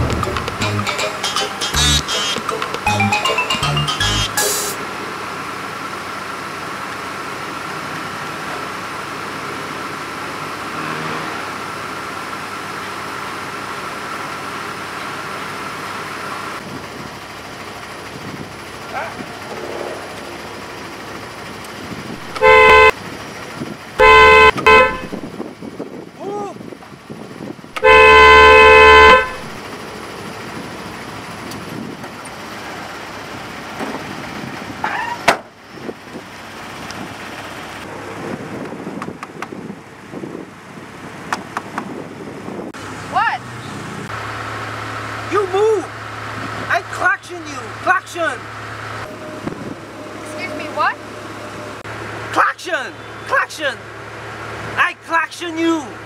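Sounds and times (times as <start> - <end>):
steady high tone: 0.0 - 5.0, 48.4 - 53.3
street traffic noise: 0.0 - 56.0
vehicle engines running: 0.0 - 56.0.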